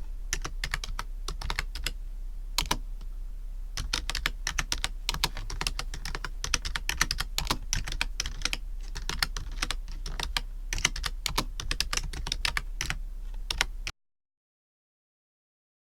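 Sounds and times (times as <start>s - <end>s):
keyboard typing: 0.0s - 2.0s, 2.6s - 2.8s, 3.8s - 13.8s
steady low hum: 0.0s - 13.9s.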